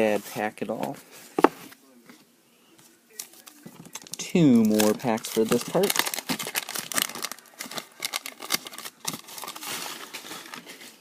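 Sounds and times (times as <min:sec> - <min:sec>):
wax-paper wrapper crinkling: 0:03.1 - 0:11.0.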